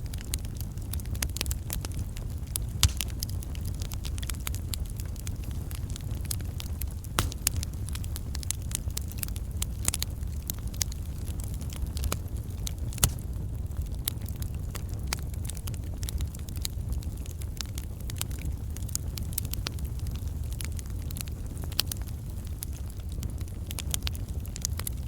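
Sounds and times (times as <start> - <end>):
low rumble of flames: 0.0 - 25.0
wood fire crackling: 0.2 - 25.0
sharp pops and snaps: 2.5 - 4.5, 6.6 - 9.3, 12.0 - 13.4.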